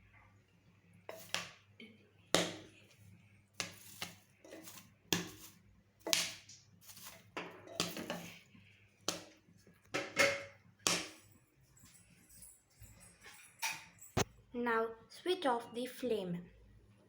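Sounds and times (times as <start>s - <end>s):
popcorn popping in a pressure cooker: 3.6s - 8.4s.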